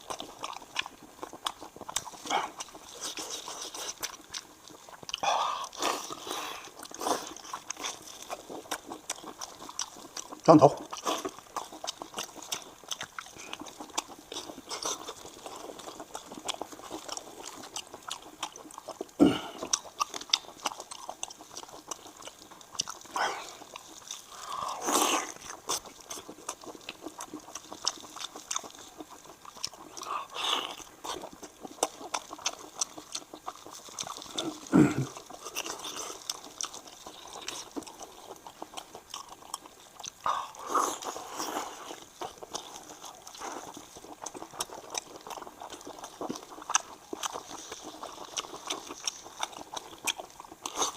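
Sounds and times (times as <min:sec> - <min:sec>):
wet chewing: 0:00.0 - 0:50.9
loud bites and sucks: 0:24.3 - 0:25.4.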